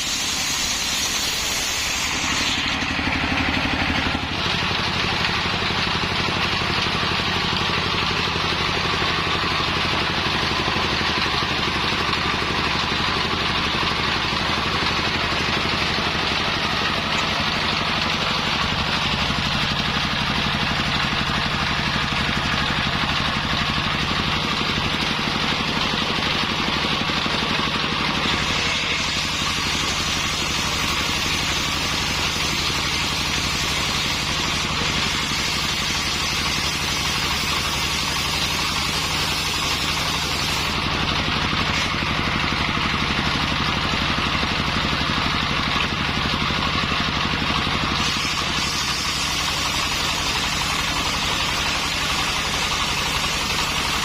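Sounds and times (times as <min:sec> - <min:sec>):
circular saw machine running: 0:00.0 - 0:54.0.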